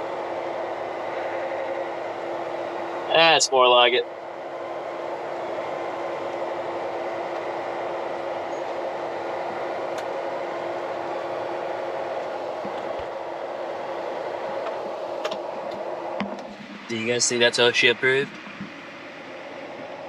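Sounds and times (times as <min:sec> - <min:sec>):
grain unloading machinery: 0:03.1 - 0:04.0.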